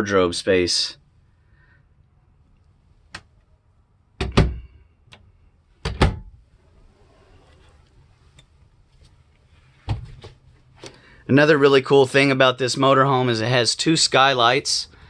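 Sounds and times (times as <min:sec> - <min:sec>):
wardrobe doors knocking shut: 0:04.2 - 0:04.6, 0:05.8 - 0:06.3.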